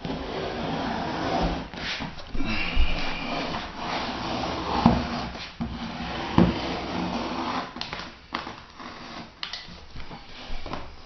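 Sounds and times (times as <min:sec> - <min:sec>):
vinyl sheet rustling and scraping: 0:00.0 - 0:02.3, 0:03.0 - 0:09.4.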